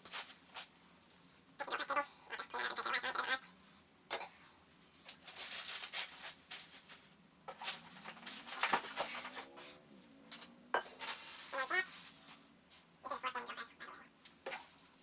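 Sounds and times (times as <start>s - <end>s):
parts and packaging handled: 0.0s - 1.3s, 4.9s - 12.9s.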